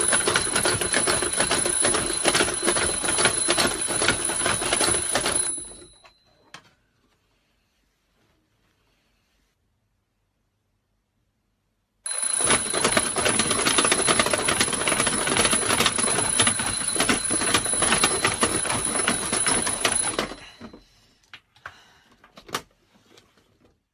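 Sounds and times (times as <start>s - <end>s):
alarm clock bell ringing: 0.0s - 6.3s, 12.1s - 20.9s.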